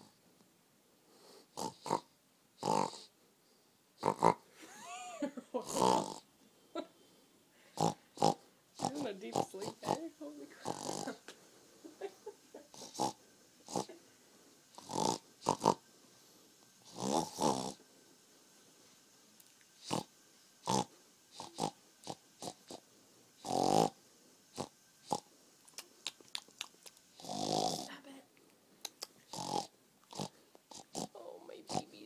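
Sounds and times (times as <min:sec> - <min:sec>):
baby snoring: 0:01.4 - 0:03.1, 0:04.0 - 0:04.4, 0:05.6 - 0:06.3, 0:07.7 - 0:11.2, 0:12.7 - 0:14.0, 0:14.7 - 0:15.9, 0:16.8 - 0:17.8, 0:19.8 - 0:22.8, 0:23.4 - 0:25.3, 0:27.1 - 0:28.1, 0:29.3 - 0:32.0.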